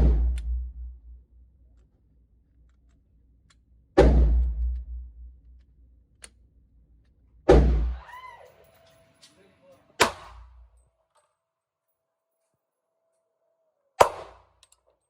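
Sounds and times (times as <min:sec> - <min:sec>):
gunshots with echoing decay: 0:07.5 - 0:08.1, 0:10.0 - 0:10.6, 0:14.0 - 0:14.6.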